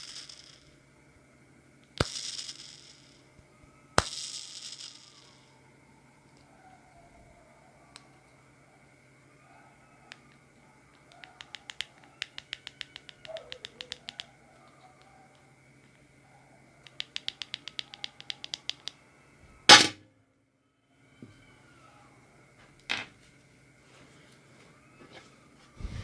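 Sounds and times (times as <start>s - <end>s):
fingerboard wheels clattering: 16.9s - 19.0s.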